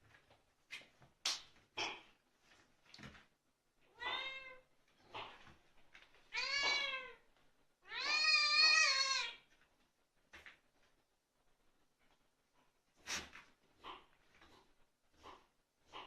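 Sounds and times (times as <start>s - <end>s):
cat meowing: 3.9s - 4.6s, 6.3s - 7.2s, 7.8s - 9.4s.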